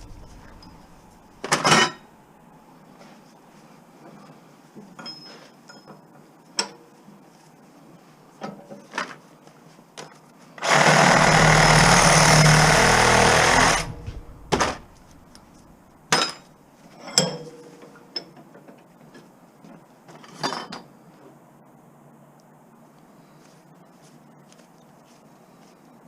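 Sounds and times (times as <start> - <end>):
power tool running: 0.0 - 1.5, 10.6 - 16.0
metal knocks and clanks: 0.0 - 2.1, 11.2 - 16.4.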